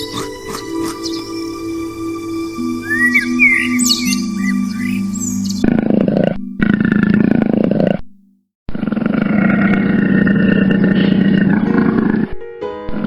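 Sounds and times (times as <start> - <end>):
lion growling and roaring: 5.5 - 8.1, 8.7 - 12.4.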